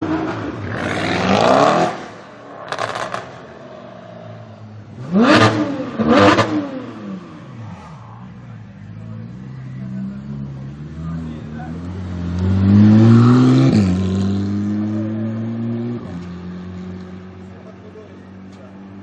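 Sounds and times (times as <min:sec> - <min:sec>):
sports car engine revving: 0:04.8 - 0:19.0.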